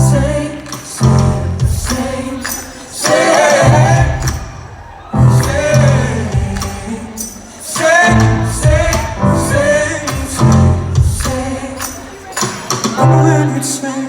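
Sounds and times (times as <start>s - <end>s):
voices singing together: 0.0s - 14.0s
pulsing bass notes: 3.6s - 4.4s, 5.2s - 6.6s, 8.1s - 11.3s.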